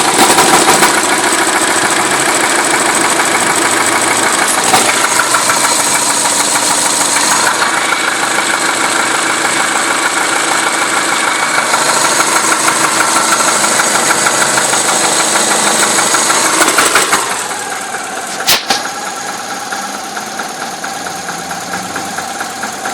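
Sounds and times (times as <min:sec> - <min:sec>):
car engine knocking: 0:00.0 - 0:22.9
sharp click: 0:18.3 - 0:18.9.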